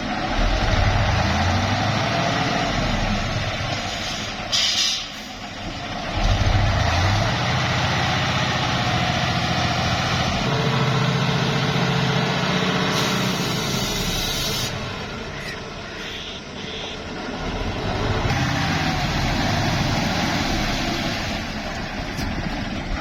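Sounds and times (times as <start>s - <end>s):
truck engine running under load: 0.0s - 23.0s
air hiss: 3.9s - 5.3s, 12.9s - 14.8s.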